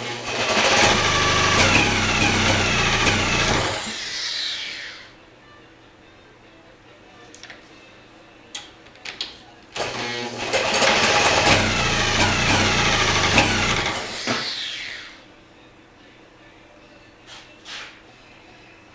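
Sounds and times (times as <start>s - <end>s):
outboard motor running: 0.2s - 3.8s, 10.4s - 14.1s.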